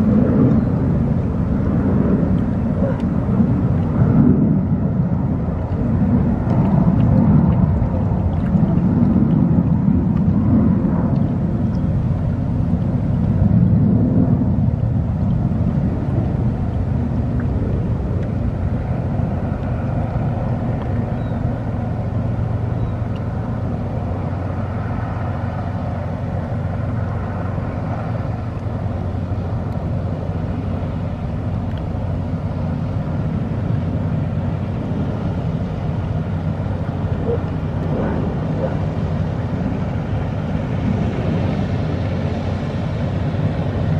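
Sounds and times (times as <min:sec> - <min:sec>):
boat engine droning: 0:00.0 - 0:43.9
water noise: 0:00.0 - 0:43.9
wind noise: 0:00.0 - 0:43.9.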